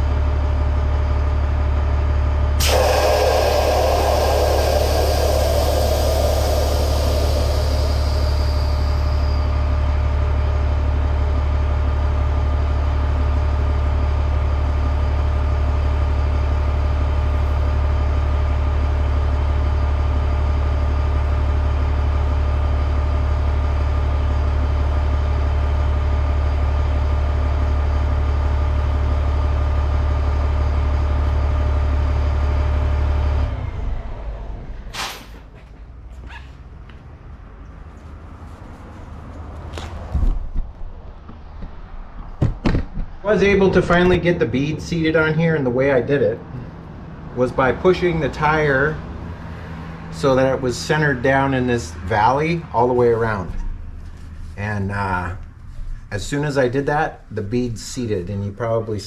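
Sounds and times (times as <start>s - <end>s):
air compressor running: 2.5s - 11.4s
air hissing: 2.6s - 9.8s
sharp snap of tire bead: 35.0s - 35.5s.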